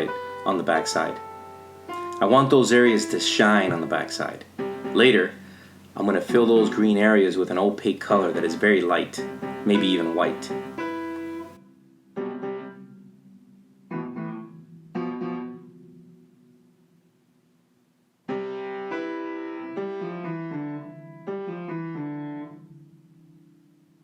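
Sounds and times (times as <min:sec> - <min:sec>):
soft piano music: 0:00.0 - 0:24.0.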